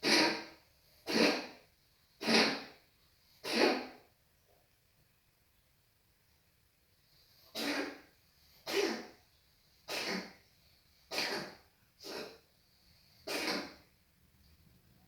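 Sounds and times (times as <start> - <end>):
short coughs: 7.6 - 8.0, 8.7 - 9.1, 9.9 - 10.4, 11.1 - 12.4, 13.3 - 13.8.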